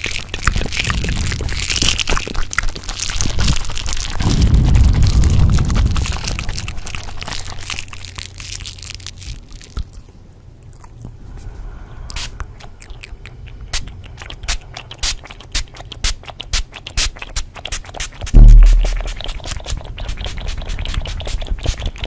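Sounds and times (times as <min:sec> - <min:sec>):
crunching and crackling: 0:00.0 - 0:11.1
steady low hum: 0:18.3 - 0:20.1.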